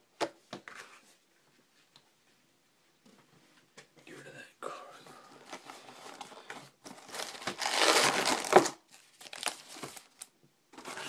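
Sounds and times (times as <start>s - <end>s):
packaging crinkling: 5.4s - 10.3s.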